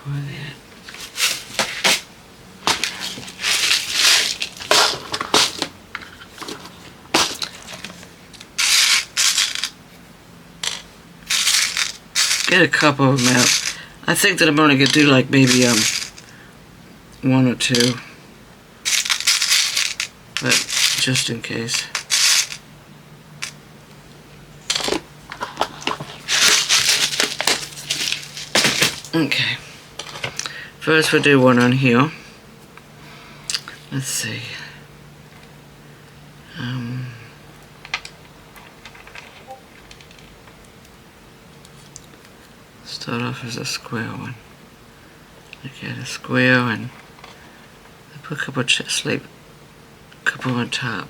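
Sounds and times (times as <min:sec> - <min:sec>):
hands rummaging through containers: 0:00.8 - 0:09.8, 0:10.6 - 0:13.9, 0:14.8 - 0:16.3, 0:17.8 - 0:18.0, 0:18.9 - 0:22.6, 0:24.6 - 0:31.8.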